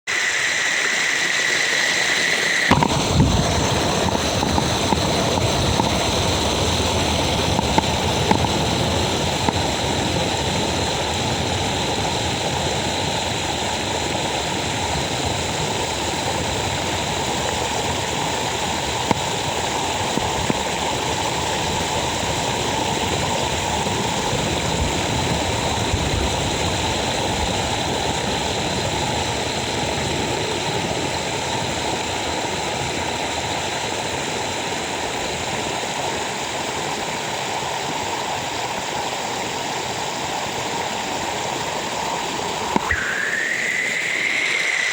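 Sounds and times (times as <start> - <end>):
stream water rushing: 0.1 - 44.9.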